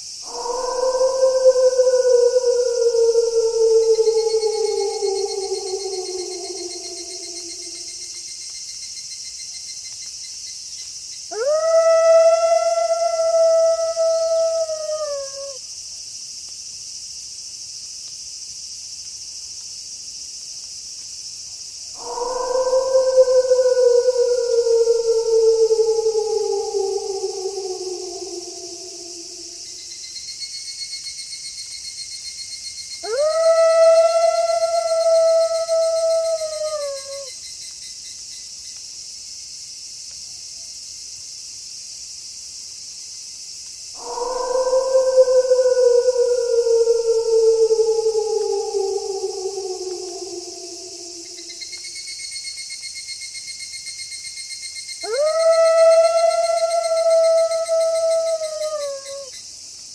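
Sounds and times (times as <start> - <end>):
night insects chirring: 0.0 - 59.9
wolf howling: 0.2 - 8.1, 11.3 - 15.6, 22.0 - 30.0, 33.0 - 37.3, 44.0 - 52.0, 55.0 - 59.3.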